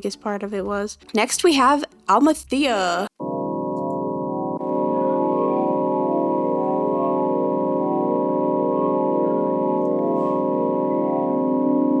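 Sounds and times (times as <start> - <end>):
eerie organ-like drone: 3.2 - 12.0.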